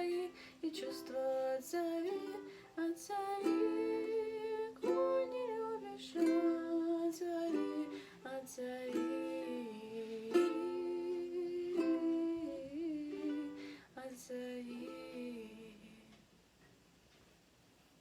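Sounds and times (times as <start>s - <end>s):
ukulele playing chords: 0.0s - 13.7s.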